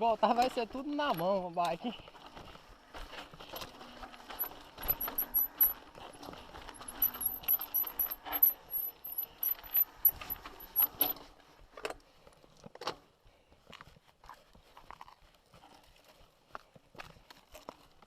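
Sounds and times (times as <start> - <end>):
mountain bike rattling over rocks: 0.1 - 11.1.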